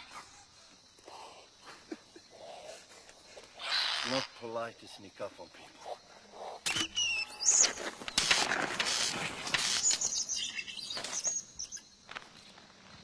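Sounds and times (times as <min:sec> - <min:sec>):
short high chirping calls: 0:06.7 - 0:08.2, 0:09.6 - 0:11.9.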